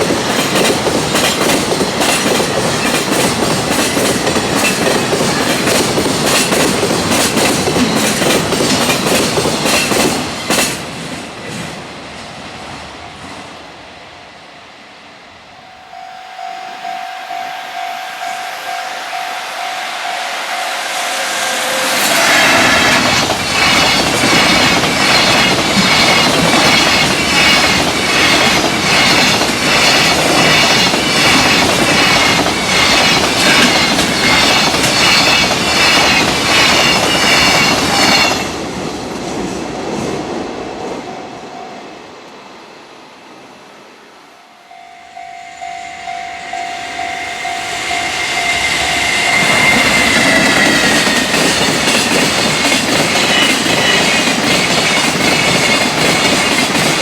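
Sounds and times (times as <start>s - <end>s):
train wheels clattering over joints: 0.0s - 11.8s, 22.1s - 39.8s, 49.1s - 57.0s
train rumble: 0.0s - 57.0s
steady tone: 13.7s - 24.8s, 44.2s - 52.0s.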